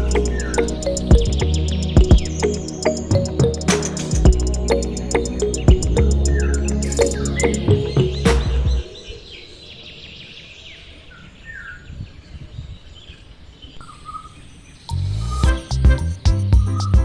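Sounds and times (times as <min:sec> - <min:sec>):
music with a beat: 0:00.0 - 0:08.7, 0:15.4 - 0:17.0
bird chirps: 0:00.0 - 0:15.4.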